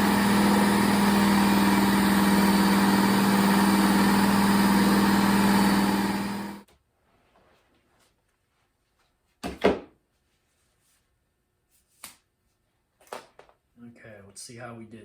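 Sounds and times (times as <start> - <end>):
belt sharpening machine humming: 0.0 - 6.6.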